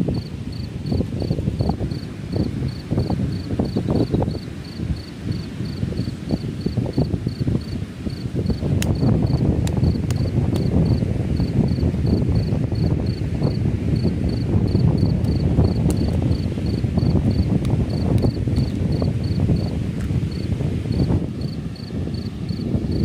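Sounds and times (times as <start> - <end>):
insect chirping: 0.0 - 23.0
wind buffeting microphone: 0.0 - 23.0.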